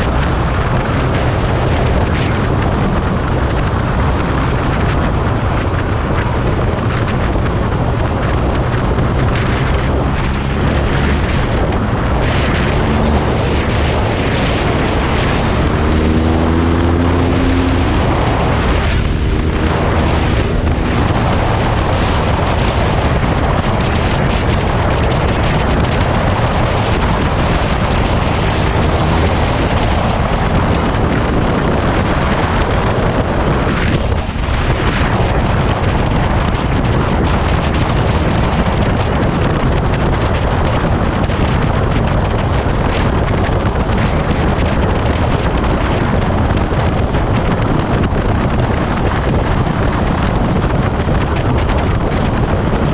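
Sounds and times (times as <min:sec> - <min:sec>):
motorcycle engine accelerating: 0:00.0 - 0:52.9
wind noise on microphone: 0:00.0 - 0:52.9.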